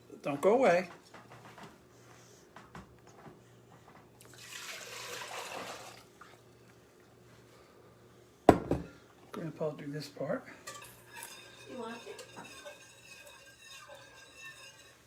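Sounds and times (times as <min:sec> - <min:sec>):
liquid pouring into saucepan: 0:04.2 - 0:06.6, 0:10.7 - 0:15.0.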